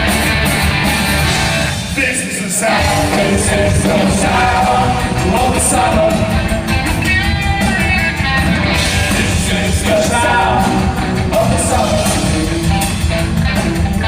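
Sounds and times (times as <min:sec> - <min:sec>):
punk rock band playing live: 0:00.0 - 0:14.0
person singing: 0:02.0 - 0:07.0, 0:09.0 - 0:12.6.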